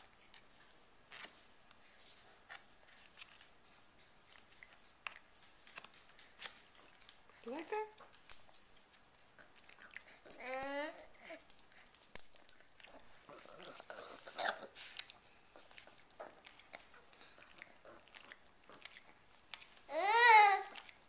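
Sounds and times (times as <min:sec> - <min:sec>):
baby chewing: 0:08.9 - 0:21.0.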